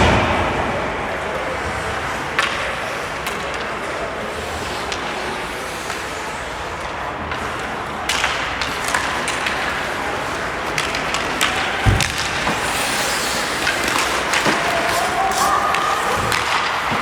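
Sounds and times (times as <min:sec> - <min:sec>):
hockey sticks and puck clacking: 0:00.0 - 0:17.0
skates rushing on ice: 0:00.0 - 0:17.0.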